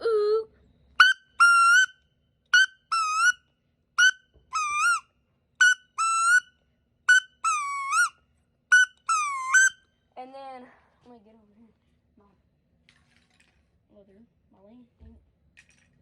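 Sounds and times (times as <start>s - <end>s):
duck call whistled notes: 1.0s - 2.0s, 2.6s - 3.4s, 4.0s - 5.0s, 5.6s - 6.5s, 7.1s - 8.1s, 8.7s - 9.8s.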